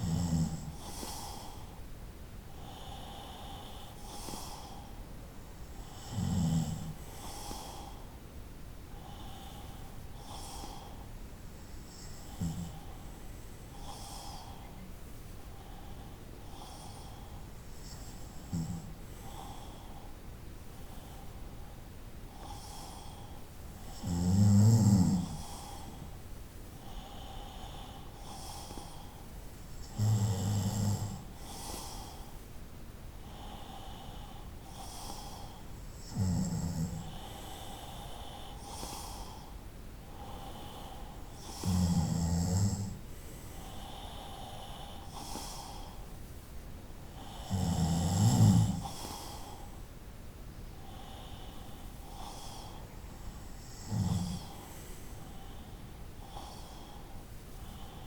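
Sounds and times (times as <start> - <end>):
quiet out-breath: 0.7 - 5.9, 6.8 - 24.0, 25.2 - 30.0, 31.2 - 36.0, 36.8 - 42.0, 42.8 - 47.7, 48.6 - 58.0
person snoring: 5.8 - 7.6, 23.9 - 26.0, 29.8 - 32.2, 34.7 - 39.5, 40.2 - 43.0, 47.2 - 49.7, 53.4 - 55.5.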